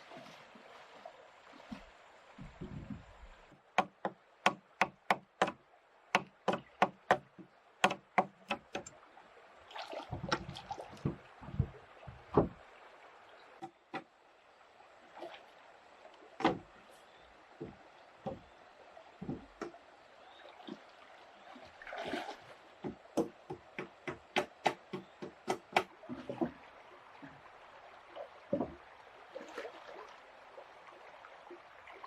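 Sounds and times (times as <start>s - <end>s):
faint running stream: 0.0s - 32.0s
wood knocking on wood: 2.4s - 3.1s, 3.8s - 5.6s, 6.2s - 8.9s, 10.1s - 12.6s, 16.4s - 16.7s, 17.6s - 18.5s, 19.2s - 19.8s, 22.8s - 26.5s.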